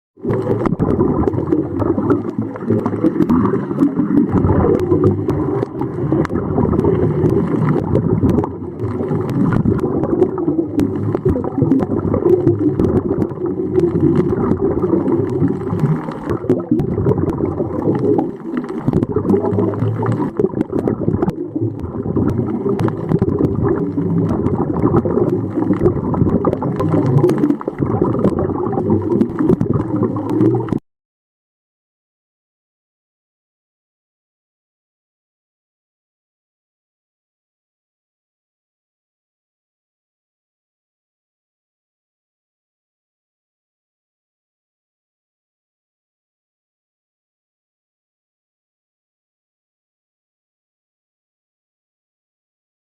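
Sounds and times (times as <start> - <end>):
muffled water sloshing and gurgling: 0.2 - 30.8.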